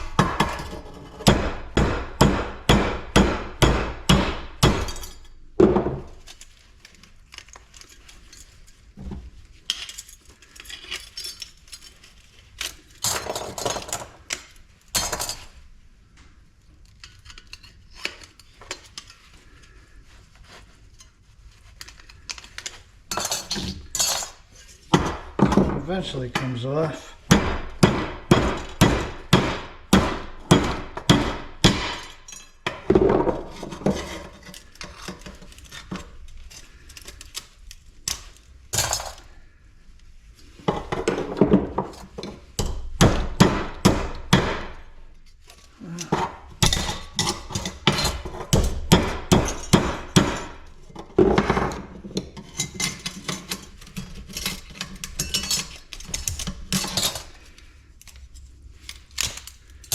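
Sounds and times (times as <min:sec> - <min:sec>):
metal parts clanking and rattling: 0:09.6 - 0:15.6, 0:21.8 - 0:26.6, 0:31.9 - 0:39.4, 0:45.4 - 0:59.9.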